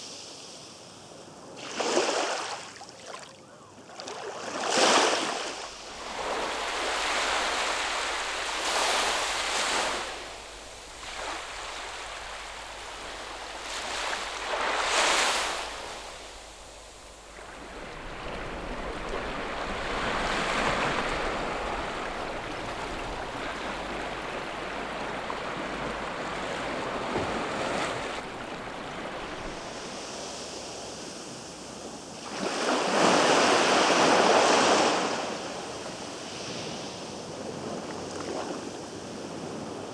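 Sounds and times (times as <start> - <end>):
ocean waves washing in: 4.6 - 35.4.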